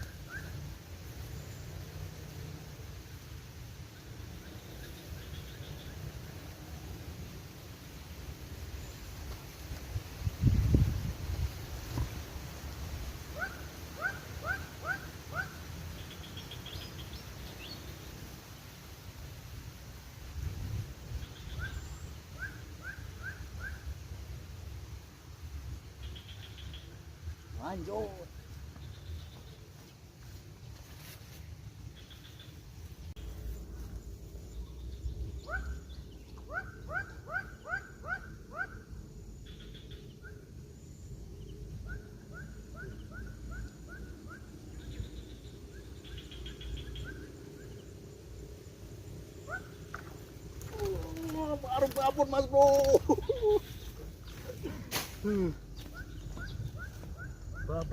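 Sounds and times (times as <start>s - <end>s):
bird calling: 0.0s - 0.7s, 13.3s - 17.8s, 21.2s - 23.9s, 34.6s - 48.0s, 49.3s - 57.9s
low outdoor rumble: 0.0s - 57.9s
animal calling upswept notes: 13.4s - 15.6s, 35.4s - 38.9s, 41.8s - 44.5s, 55.8s - 57.9s
bird twittering: 41.4s - 48.0s, 55.7s - 57.9s.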